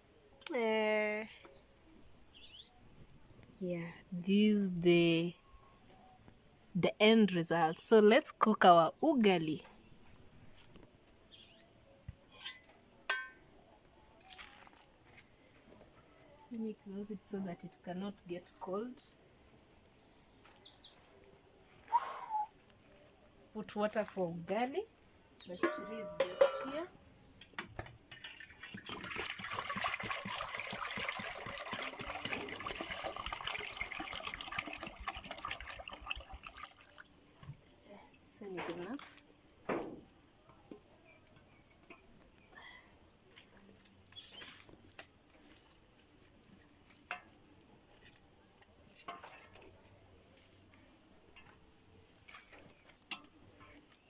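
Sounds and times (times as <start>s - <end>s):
faint high chirping: 1.3s - 3.5s, 5.3s - 6.4s, 11.3s - 14.7s, 19.8s - 23.6s
faint knocks and clinks: 25.4s - 28.4s
water pouring into a pot: 28.1s - 37.2s.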